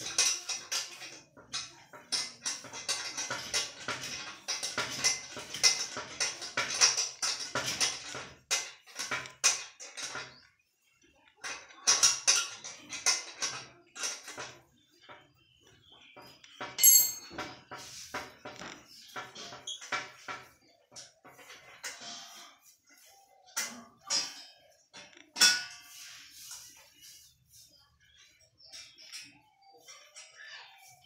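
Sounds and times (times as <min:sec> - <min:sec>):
metal tools clinking and scraping: 0:16.4 - 0:27.3
ringing metallic clink: 0:16.8 - 0:17.3.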